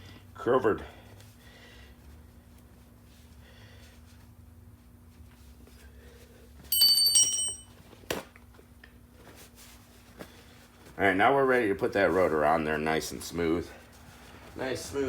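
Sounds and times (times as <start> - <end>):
bell-like ring: 6.7 - 7.7.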